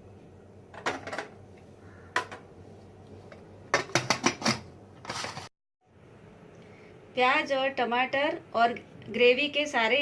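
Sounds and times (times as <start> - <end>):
metal pressure cooker clatter: 3.7 - 4.6
metal scrape: 5.0 - 5.5.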